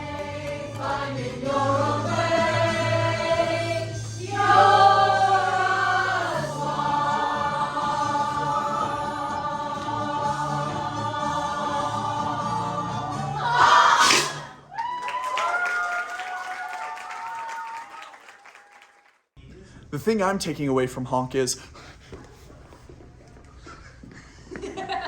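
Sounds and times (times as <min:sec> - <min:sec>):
choir singing held chords: 0:00.0 - 0:14.6.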